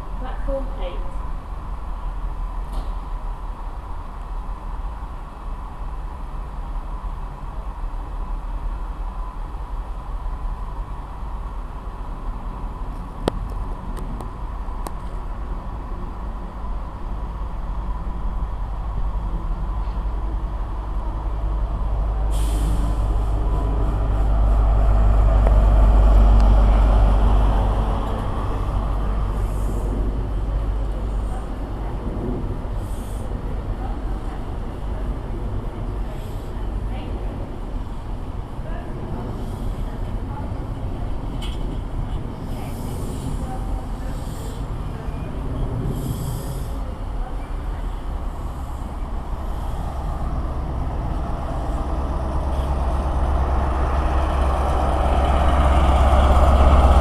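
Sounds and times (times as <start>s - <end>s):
train rumbling: 0.0s - 57.0s
sharp hiss of air: 22.2s - 24.4s, 32.7s - 33.3s, 44.0s - 44.8s, 45.9s - 46.9s.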